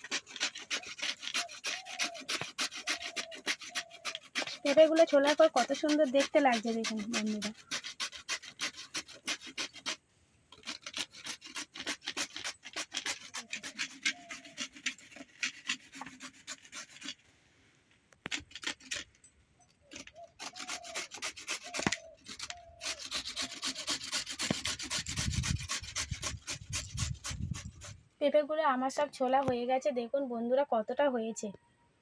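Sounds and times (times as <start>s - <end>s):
papaya rasping on hand grater: 0.0s - 10.0s, 10.6s - 17.2s, 18.2s - 19.1s, 19.9s - 28.0s.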